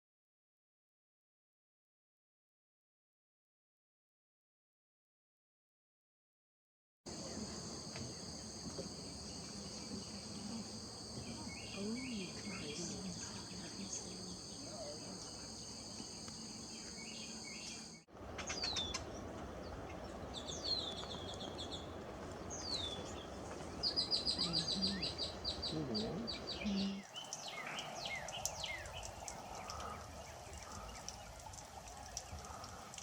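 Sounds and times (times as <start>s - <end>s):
small bird chirps: 11.2s - 32.9s
rapid bird trill: 16.5s - 33.0s.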